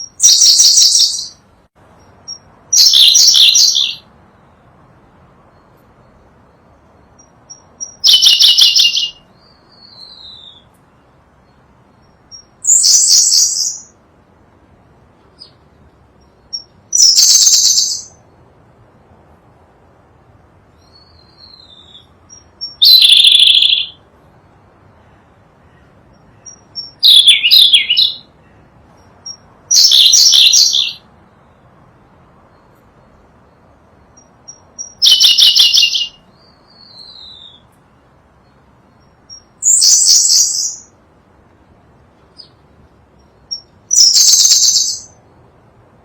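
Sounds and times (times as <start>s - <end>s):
bird singing high phrases: 0.0s - 4.6s, 5.4s - 14.0s, 15.2s - 18.4s, 20.7s - 24.1s, 25.6s - 31.7s, 32.5s - 37.7s, 38.4s - 41.0s, 43.2s - 45.3s.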